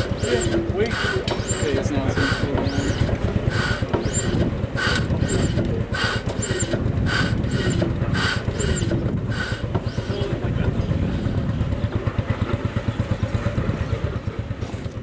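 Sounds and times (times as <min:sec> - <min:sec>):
rhythmic rasping strokes with squeak: 0:00.0 - 0:12.0
steady low rumble: 0:00.0 - 0:14.2.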